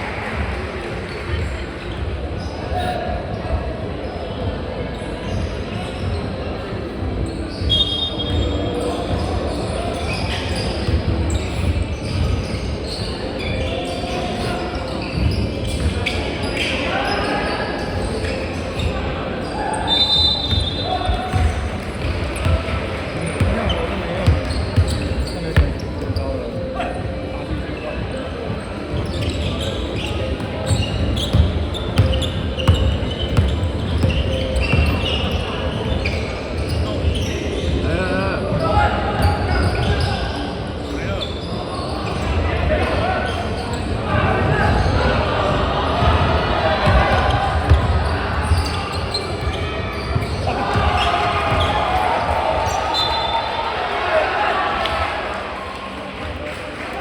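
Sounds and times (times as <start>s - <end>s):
players' voices: 0.0s - 57.0s
shoe squeak: 1.1s - 3.1s, 4.9s - 42.3s, 43.3s - 44.0s, 47.2s - 51.8s, 52.6s - 53.5s
basketball bouncing on court: 20.4s - 37.3s, 46.8s - 48.8s
basketball bouncing: 23.4s - 26.2s, 30.4s - 35.4s.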